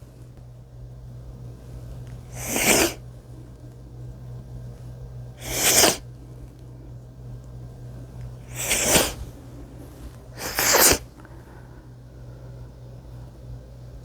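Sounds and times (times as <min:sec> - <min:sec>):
wet human sneezes: 0:02.3 - 0:03.0, 0:05.4 - 0:06.1, 0:08.5 - 0:11.4.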